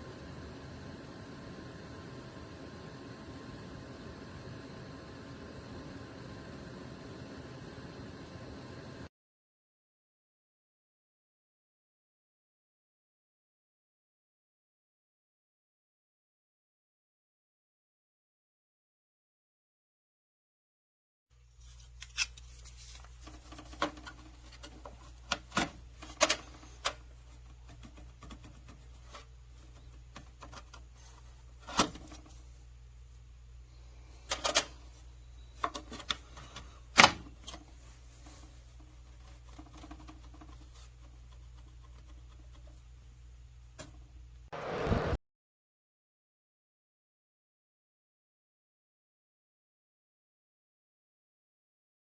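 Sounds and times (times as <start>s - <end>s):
burst of noise: 44.5s - 45.2s
low hum: 44.5s - 45.2s.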